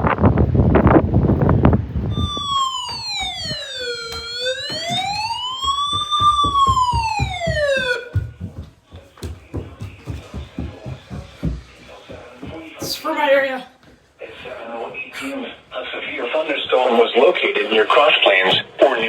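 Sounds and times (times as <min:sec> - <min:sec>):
gusty wind on microphone: 0:00.0 - 0:02.3
low thumps: 0:00.8 - 0:12.8
siren wailing: 0:02.1 - 0:08.3.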